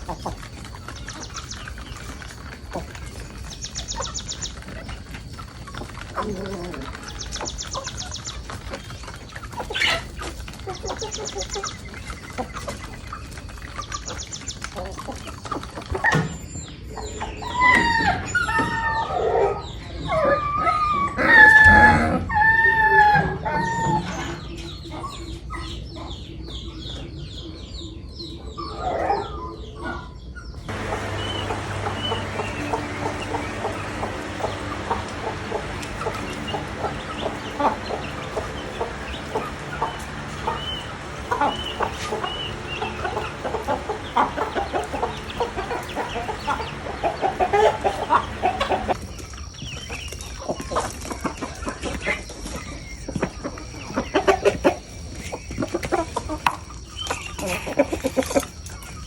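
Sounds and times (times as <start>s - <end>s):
chicks peeping: 0.0s - 21.8s, 23.3s - 59.0s
hens clucking: 0.0s - 25.7s, 30.7s - 59.0s
rooster crowing: 30.7s - 49.0s
low hum: 30.7s - 50.1s.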